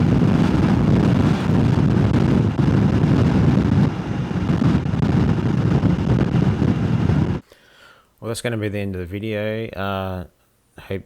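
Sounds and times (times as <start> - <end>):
wind buffeting microphone: 0.0 - 7.4.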